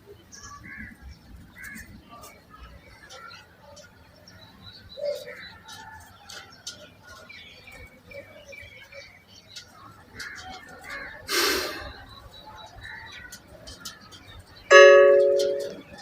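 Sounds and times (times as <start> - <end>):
birds chirping: 0.0 - 16.0
louder lower bird call: 11.3 - 12.1.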